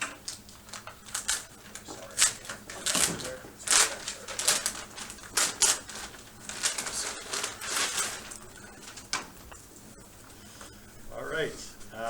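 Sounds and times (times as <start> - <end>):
paper rustling and crinkling: 0.2 - 9.6.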